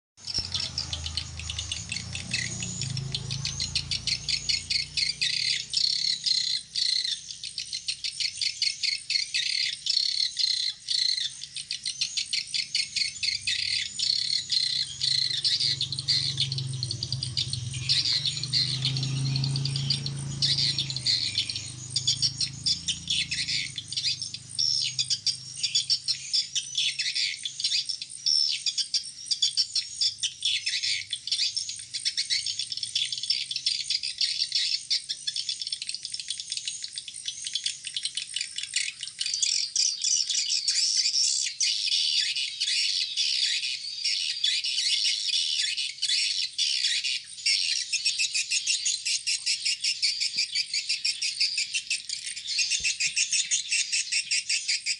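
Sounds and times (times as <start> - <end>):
swiftlets twittering: 11.6 - 26.2.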